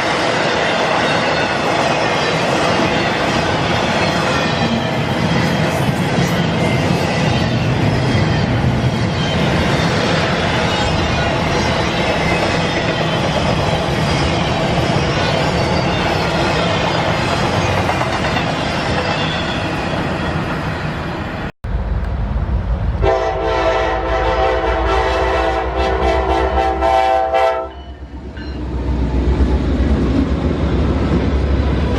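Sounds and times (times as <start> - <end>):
freight train wheels on rails: 0.0 - 31.9
locomotive engine rumble: 21.7 - 26.7
locomotive air horn blast: 23.0 - 27.9.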